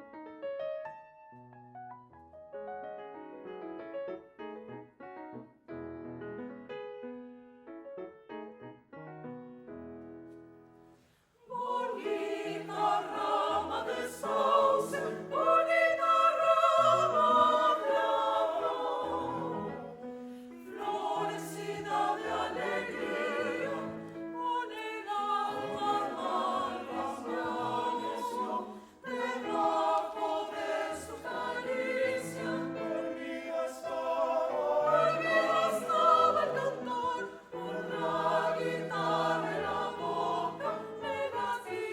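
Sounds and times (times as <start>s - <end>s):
piano accompaniment: 0.0s - 10.9s
choir singing: 11.4s - 41.9s
singers breathing: 20.0s - 20.6s.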